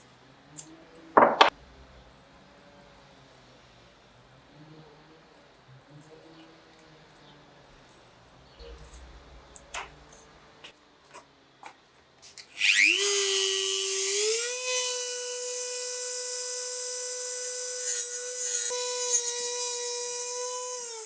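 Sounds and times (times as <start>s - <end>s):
power tool motor whine: 12.5s - 21.0s.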